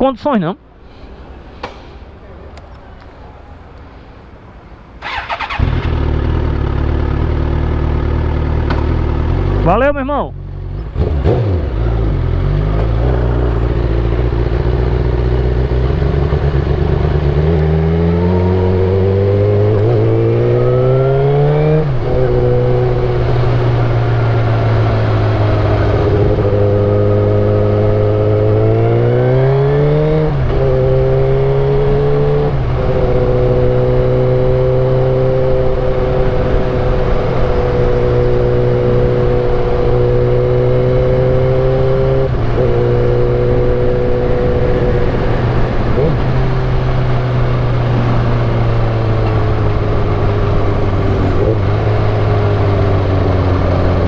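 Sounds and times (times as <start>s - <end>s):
motorcycle engine accelerating: 5.0s - 9.7s, 10.4s - 54.0s.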